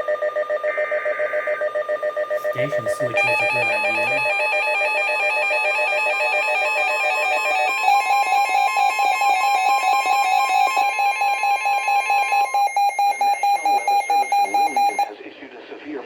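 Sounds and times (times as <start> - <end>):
pulsing electronic alarm: 0.0 - 15.1
steady warning tone: 0.0 - 15.1.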